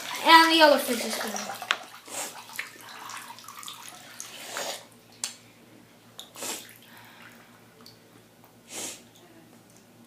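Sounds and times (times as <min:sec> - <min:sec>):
bathwater sloshing and splashing: 0:00.0 - 0:05.3, 0:06.2 - 0:08.1.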